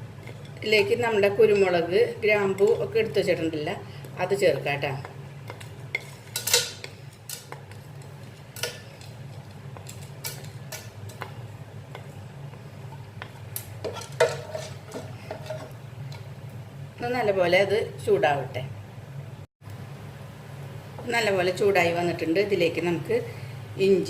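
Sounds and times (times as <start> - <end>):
steady low hum: 0.0 - 24.0
metal spoon clinking against pan: 5.5 - 9.2, 13.6 - 15.7.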